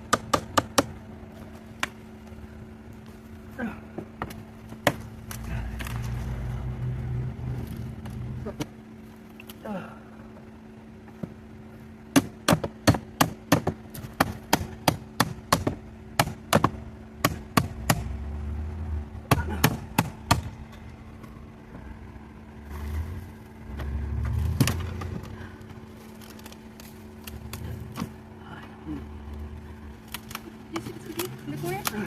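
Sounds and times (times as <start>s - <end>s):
low rumbling handling noise: 0.0s - 9.6s, 16.6s - 32.0s.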